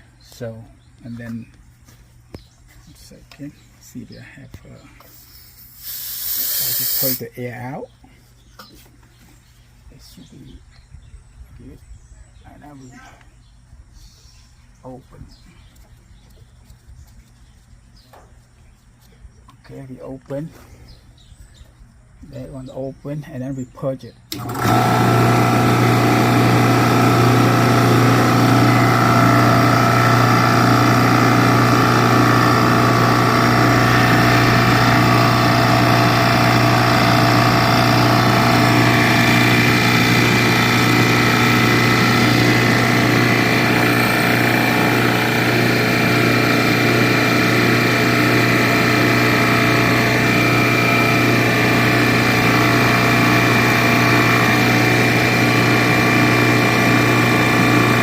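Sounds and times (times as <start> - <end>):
compressor humming: 0.0 - 8.7, 24.2 - 58.0.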